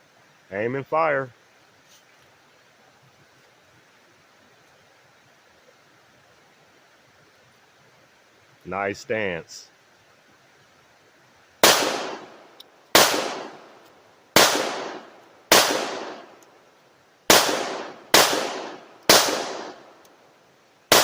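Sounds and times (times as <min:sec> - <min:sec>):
pistol shots with echo: 0:11.6 - 0:13.6, 0:14.4 - 0:16.3, 0:17.3 - 0:19.9.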